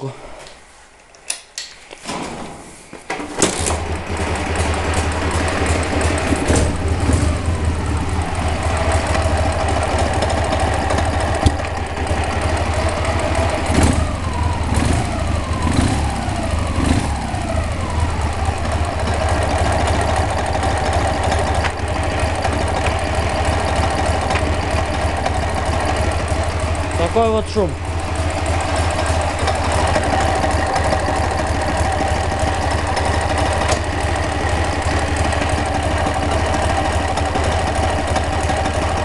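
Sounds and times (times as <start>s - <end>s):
knock or whirring from clutch: 3.1s - 7.6s, 8.9s - 11.9s, 13.6s - 18.1s, 18.7s - 25.9s, 32.7s - 34.0s
car engine starting and idling: 3.1s - 39.0s.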